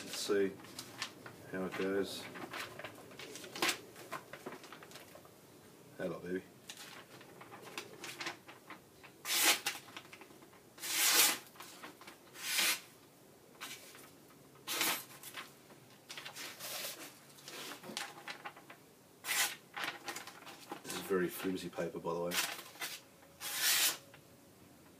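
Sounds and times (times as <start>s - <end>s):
paper rustling: 0.0s - 5.3s, 6.7s - 12.8s, 13.6s - 24.2s
blade swishes cutting paper: 22.8s - 24.0s.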